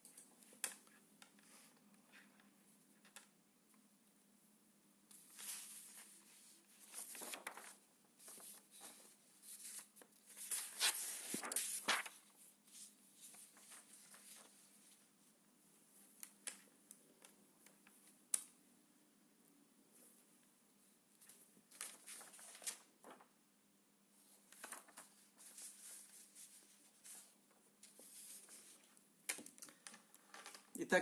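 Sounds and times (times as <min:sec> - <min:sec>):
rustling handling noise: 0:05.1 - 0:15.1.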